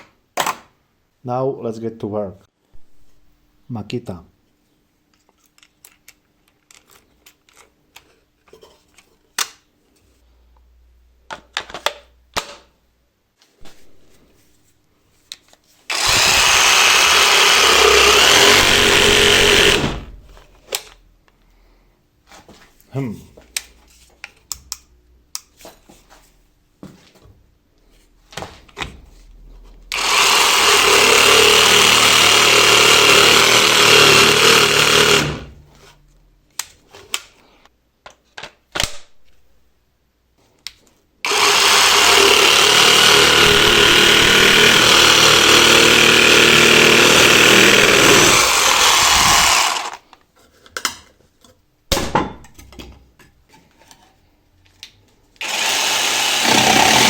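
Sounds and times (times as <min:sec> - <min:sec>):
jigsaw cutting: 0:15.9 - 0:20.4, 0:29.9 - 0:35.5, 0:41.2 - 0:50.0, 0:55.4 - 0:57.0.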